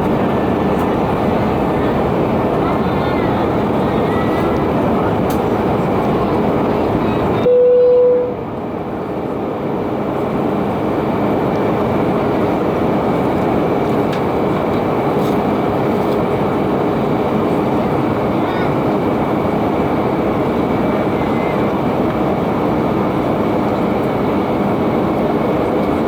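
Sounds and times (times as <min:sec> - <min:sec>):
airliner cabin noise: 0:00.0 - 0:26.0
short single tone: 0:07.4 - 0:08.4.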